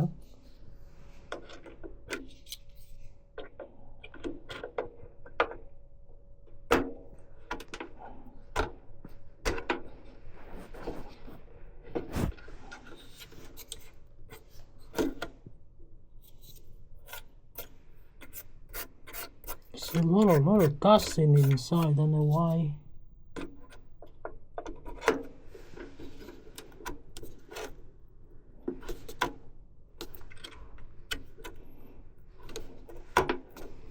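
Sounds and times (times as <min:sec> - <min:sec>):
plastic rubbing and scraping: 0:10.2 - 0:13.8.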